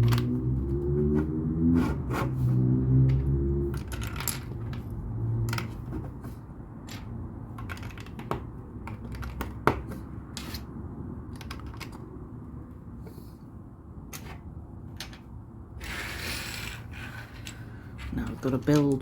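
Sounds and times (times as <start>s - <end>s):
plastic bricks clicking: 3.1s - 4.9s, 6.8s - 10.6s, 11.3s - 12.0s, 14.1s - 15.3s.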